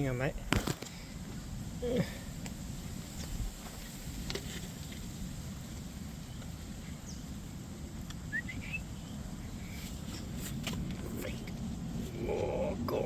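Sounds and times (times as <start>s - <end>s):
low wind rumble: 0.0s - 13.0s
rising bird chirp: 8.3s - 9.9s.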